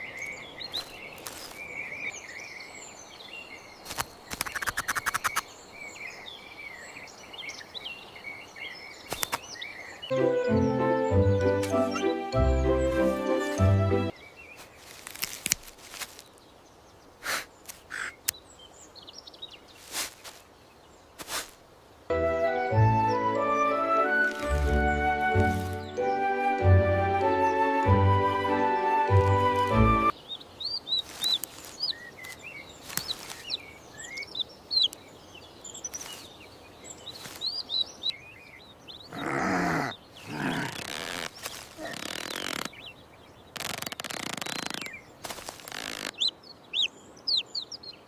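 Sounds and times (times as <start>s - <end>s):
faint outdoor ambience: 0.0s - 48.0s
songbirds chirping: 0.0s - 48.0s
sharp clicks: 3.9s - 5.4s
music: 10.1s - 14.1s, 22.1s - 30.1s.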